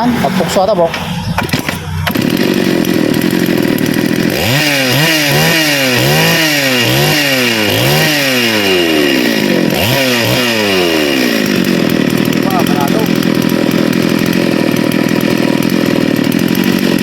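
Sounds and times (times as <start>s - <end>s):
chainsaw engine revving: 0.0s - 17.0s.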